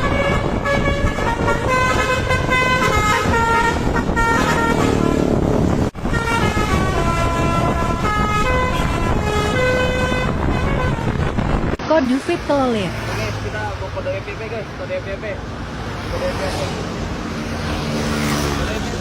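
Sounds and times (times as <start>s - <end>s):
multi-tone air horn melody: 0.0s - 11.5s
bus engine and road noise: 0.0s - 19.0s.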